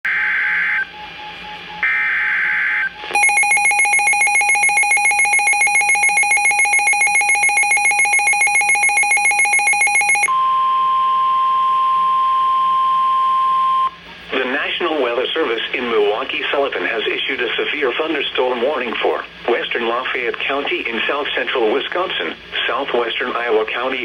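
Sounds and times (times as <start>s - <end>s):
pulsing electronic alarm: 0.1s - 10.6s
steady alarm tone: 1.8s - 11.3s.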